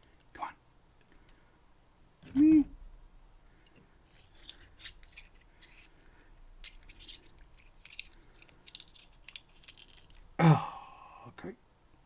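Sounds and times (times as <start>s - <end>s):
lock parts and tools clicking: 0.0s - 0.4s, 2.2s - 2.8s, 3.6s - 10.4s.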